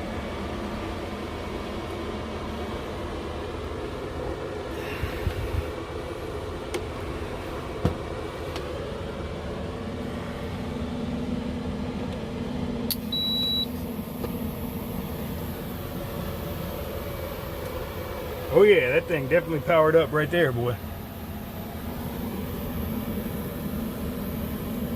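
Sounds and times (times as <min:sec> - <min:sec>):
steady hum: 0:00.0 - 0:24.9
faint high whine: 0:12.9 - 0:24.9.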